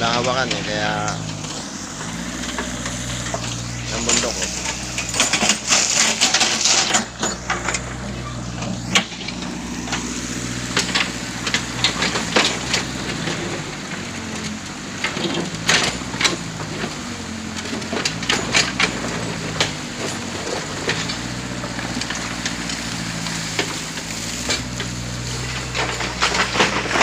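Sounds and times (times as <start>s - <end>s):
diesel engine running: 0.0s - 27.0s
bucket clanking in stones: 2.6s - 10.2s.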